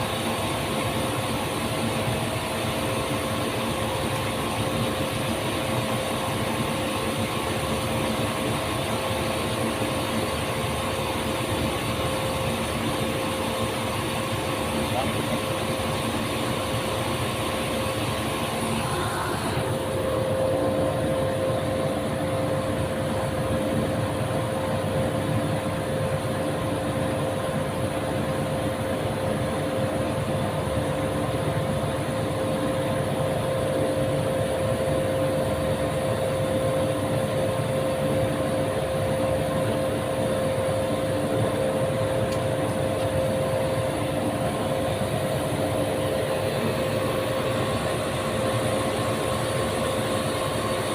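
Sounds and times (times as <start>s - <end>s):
machine motor humming: 0.0s - 23.4s.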